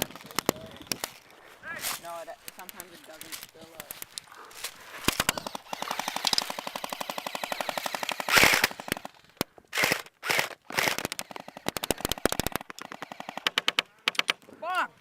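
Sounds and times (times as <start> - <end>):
airsoft guns firing full auto: 5.0 - 14.2.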